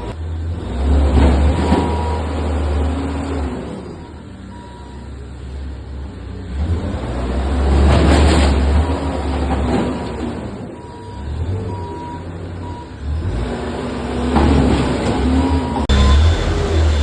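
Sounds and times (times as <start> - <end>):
diesel engine of heavy machine: 0.0 - 17.0
reversing beep: 3.9 - 5.2, 10.7 - 13.0, 15.9 - 17.0.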